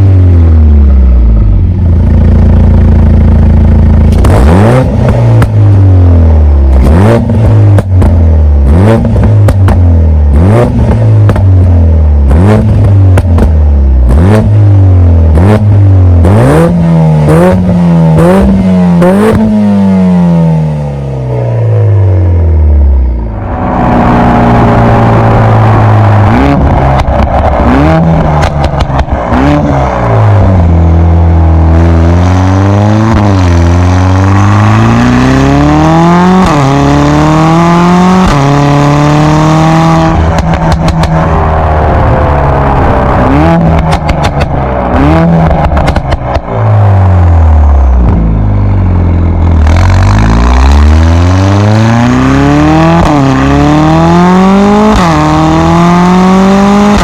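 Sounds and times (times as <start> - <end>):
car engine revving: 0.0 - 57.0
exhaust pops and crackles: 2.0 - 4.4, 5.0 - 5.8, 6.8 - 8.3, 9.0 - 10.0, 10.7 - 11.8, 12.4 - 13.7, 26.5 - 31.2, 40.0 - 47.2, 47.9 - 48.4.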